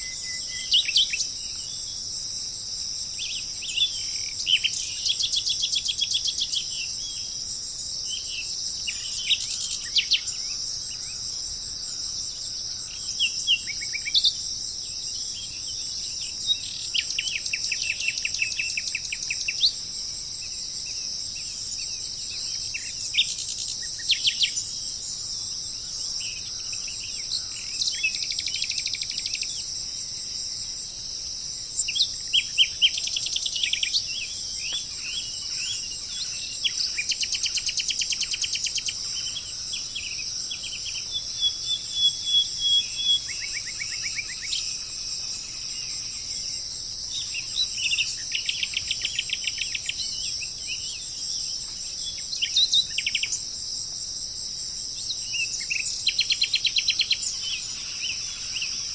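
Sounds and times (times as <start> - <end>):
high-pitched insect chorus: 0.0 - 58.9
songbirds chirping and trilling: 0.0 - 58.9.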